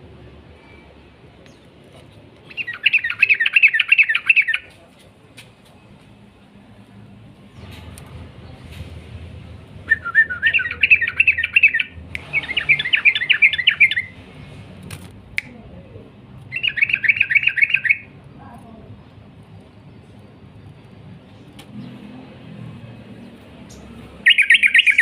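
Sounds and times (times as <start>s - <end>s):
bird chattering song: 2.4s - 4.7s, 10.3s - 14.5s, 16.5s - 18.1s, 23.6s - 25.0s.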